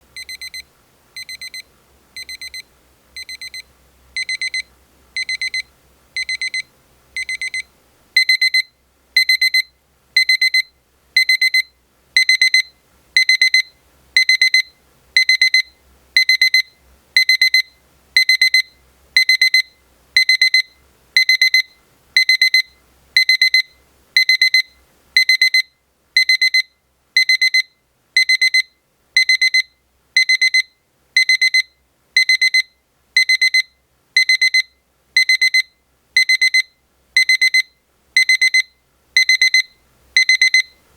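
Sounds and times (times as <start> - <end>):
alarm clock beeping: 4.2 - 4.6, 5.2 - 5.6, 6.2 - 6.6, 8.2 - 40.8.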